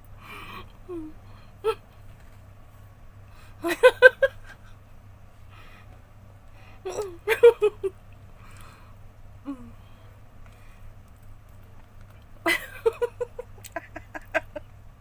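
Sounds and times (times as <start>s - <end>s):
woman humming: 0.8s - 1.8s, 6.9s - 7.5s, 9.4s - 9.9s.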